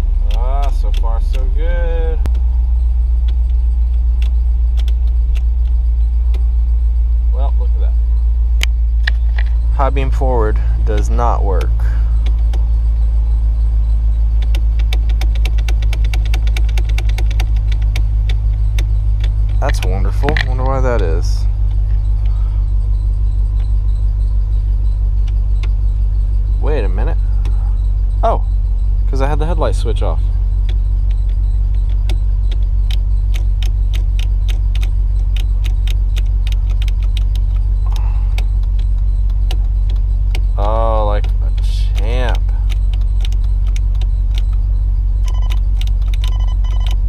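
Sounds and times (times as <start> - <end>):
turn signal clicking: 0.0 - 6.7, 8.1 - 47.0
low engine hum: 0.0 - 47.0
pickup truck idling: 0.0 - 47.0
light ticks: 0.3 - 1.5, 3.2 - 6.4, 25.2 - 25.8.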